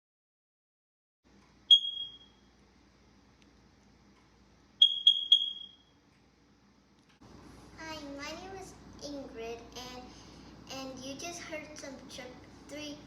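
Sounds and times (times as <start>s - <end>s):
smoke detector chirping: 1.7s - 2.5s, 4.8s - 6.0s.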